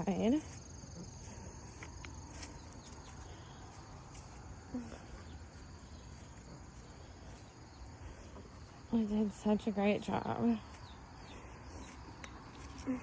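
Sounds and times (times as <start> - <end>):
crickets trilling: 0.0 - 13.0.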